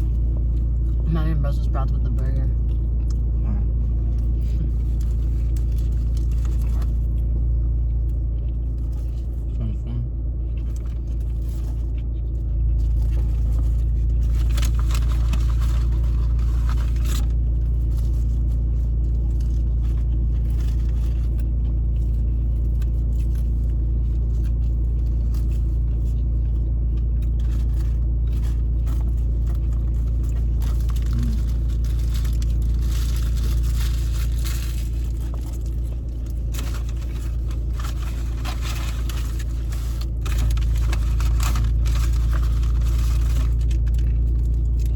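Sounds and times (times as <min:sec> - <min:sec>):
car engine idling: 0:00.0 - 0:44.9
rustling and crackling: 0:10.6 - 0:44.9.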